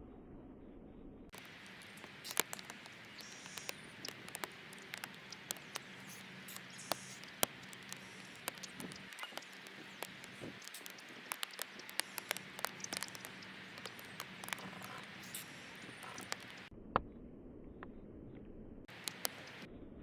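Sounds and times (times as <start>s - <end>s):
faint high chirps: 1.4s - 16.7s
light clicks and taps: 1.4s - 16.7s, 18.9s - 19.6s.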